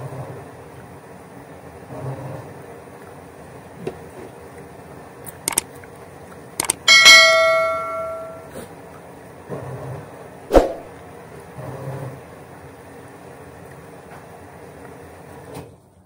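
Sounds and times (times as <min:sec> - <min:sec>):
light clicks: 0:05.3 - 0:05.7
tableware ringing clink: 0:06.8 - 0:08.5.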